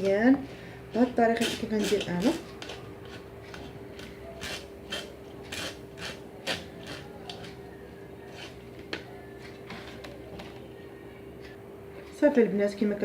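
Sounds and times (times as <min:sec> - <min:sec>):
scraping against a strainer: 0:00.9 - 0:10.6.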